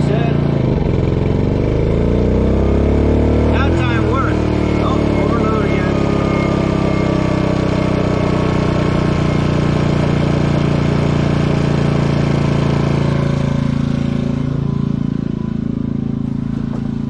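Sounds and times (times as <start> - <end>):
generator engine running: 0.0 - 17.0.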